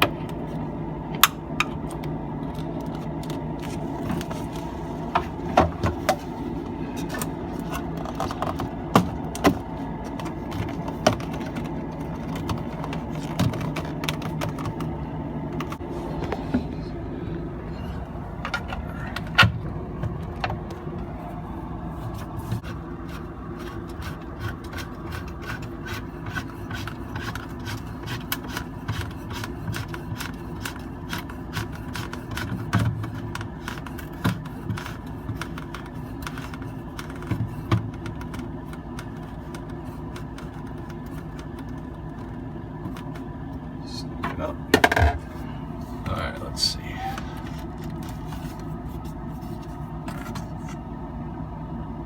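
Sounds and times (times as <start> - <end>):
steady low hum: 0.0 - 52.0
plastic parts clicking and tapping: 7.0 - 14.9, 23.9 - 43.2.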